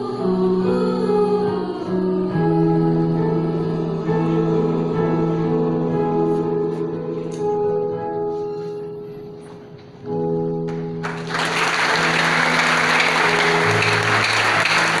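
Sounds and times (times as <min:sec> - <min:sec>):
music closing chords: 0:10.2 - 0:15.0
audience applause: 0:11.0 - 0:15.0.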